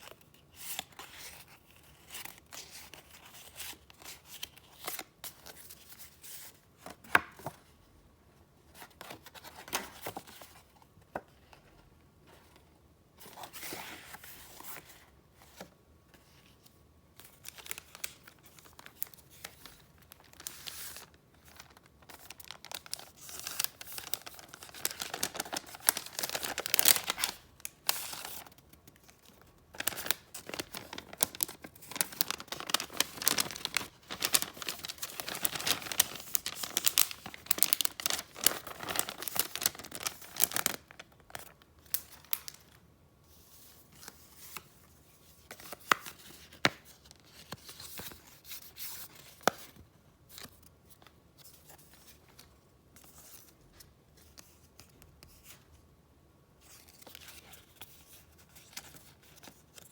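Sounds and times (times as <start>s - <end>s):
paper rustling: 17.2s - 41.5s.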